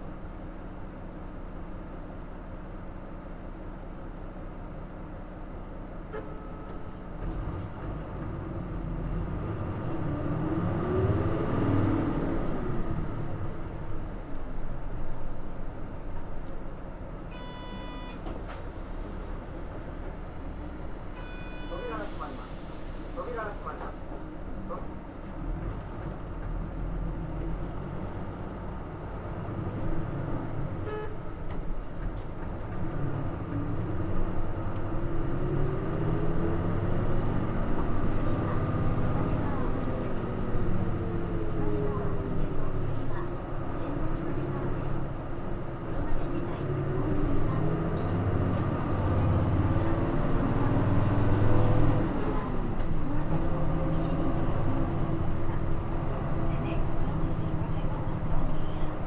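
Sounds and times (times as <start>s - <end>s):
bus diesel engine accelerating: 0.0s - 59.0s.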